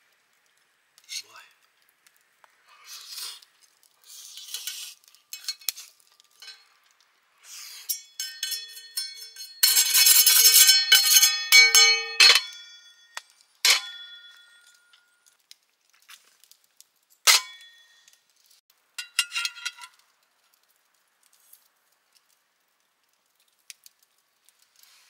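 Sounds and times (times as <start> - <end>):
metal clanks: 4.5 - 6.8, 7.9 - 15.1, 17.2 - 18.0, 19.0 - 20.0
metal gear clinking: 7.8 - 12.6.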